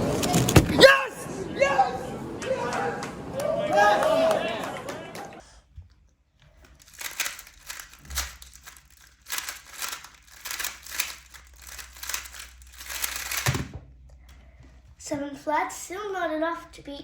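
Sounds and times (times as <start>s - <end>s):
puzzle cube clicking and rattling: 6.6s - 13.7s.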